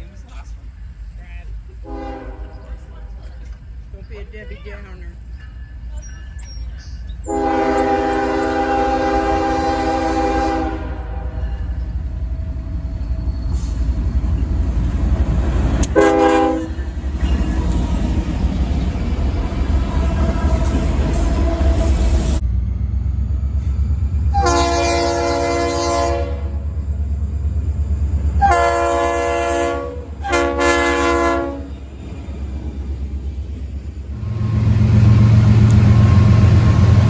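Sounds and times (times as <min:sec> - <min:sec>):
moving train rumble: 0:00.0 - 0:37.0
locomotive air horn chord: 0:01.8 - 0:02.7, 0:07.2 - 0:11.6, 0:15.8 - 0:16.8, 0:24.3 - 0:26.7, 0:28.4 - 0:31.7.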